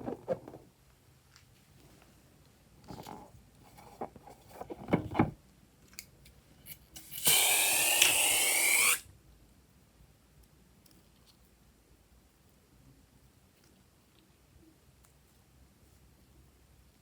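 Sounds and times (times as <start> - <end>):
loud hiss: 7.0 - 9.1.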